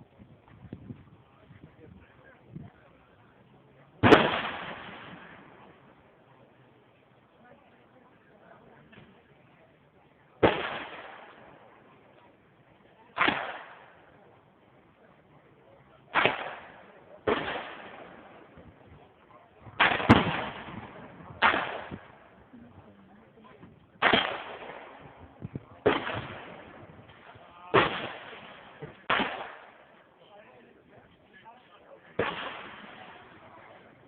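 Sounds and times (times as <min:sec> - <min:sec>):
handgun shots echoing: 0:21.4 - 0:22.0.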